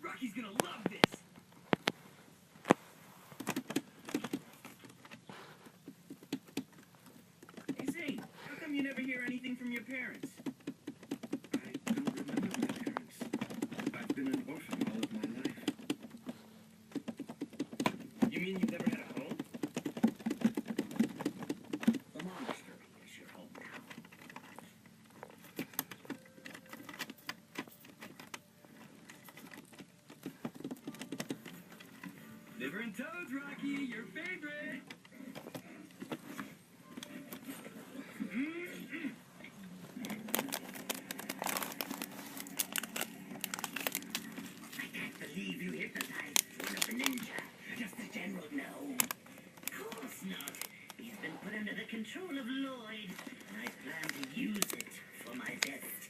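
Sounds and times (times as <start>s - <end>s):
sharp clicks and taps: 3.4s - 5.2s, 5.8s - 8.3s, 9.0s - 22.3s, 29.1s - 32.1s.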